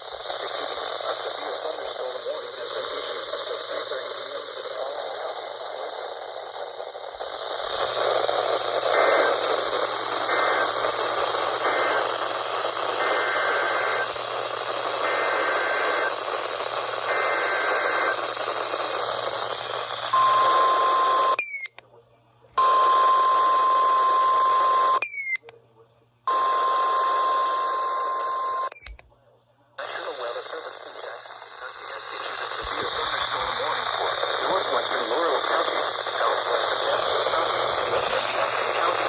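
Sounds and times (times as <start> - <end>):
radio static hiss: 0.0 - 21.9, 22.5 - 39.0.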